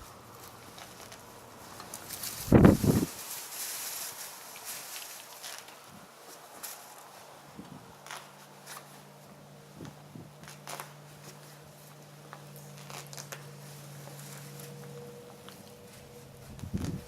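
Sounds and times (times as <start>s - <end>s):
steady low hum: 5.8s - 17.0s.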